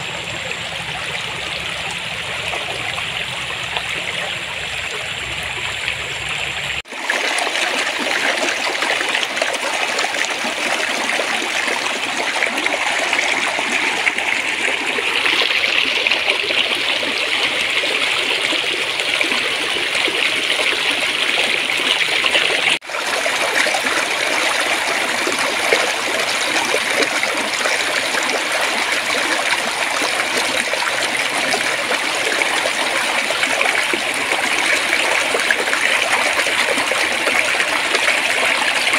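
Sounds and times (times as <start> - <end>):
stream water babbling: 0.0 - 38.9.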